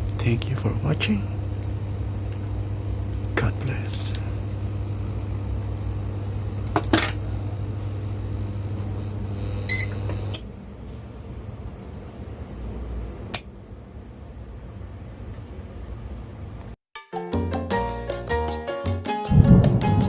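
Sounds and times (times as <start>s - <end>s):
mains hum: 0.0s - 16.8s
short beep: 9.7s - 9.9s.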